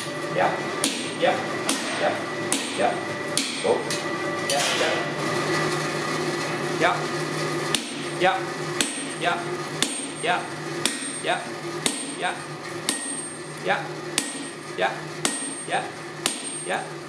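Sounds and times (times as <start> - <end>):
steady low hum: 0.0 - 17.0
hammer striking steel on anvil: 0.8 - 4.9, 7.7 - 8.2, 8.8 - 13.6, 14.2 - 17.0.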